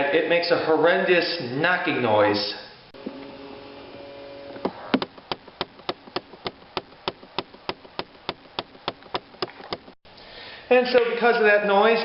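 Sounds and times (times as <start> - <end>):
actuator clicking under dashboard: 4.6 - 10.0.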